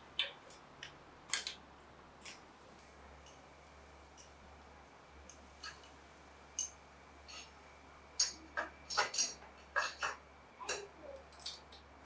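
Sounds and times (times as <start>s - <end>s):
small parts and tools clicking: 8.2s - 11.9s.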